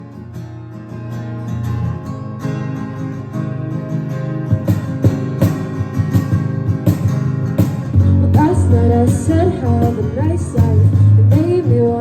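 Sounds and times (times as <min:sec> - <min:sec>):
guitar chords: 0:00.0 - 0:12.0
steady drum beat: 0:04.5 - 0:11.6.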